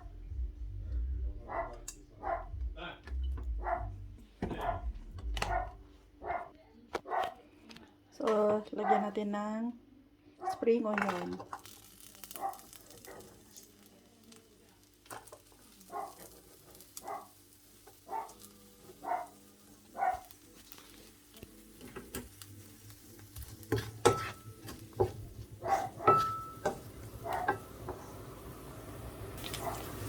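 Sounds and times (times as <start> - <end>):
low rumble: 0.0 - 1.5
vegetables sizzling in a pan: 11.4 - 30.0.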